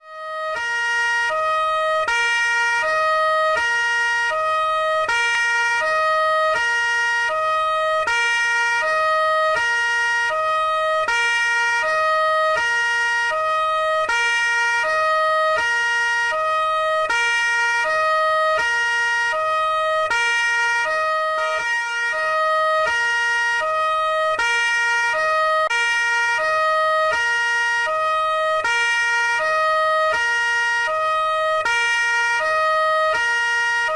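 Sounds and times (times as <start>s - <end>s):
two-tone police siren: 0.0s - 33.9s.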